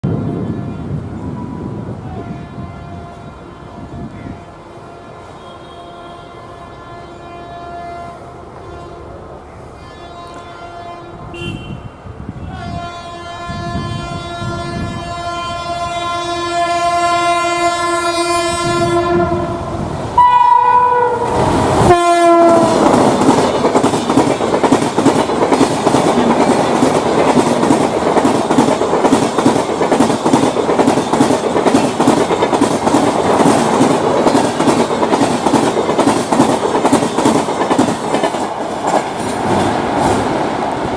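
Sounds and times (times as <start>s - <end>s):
locomotive horn blast: 2.1s - 23.2s
train wheel clatter: 22.5s - 40.9s.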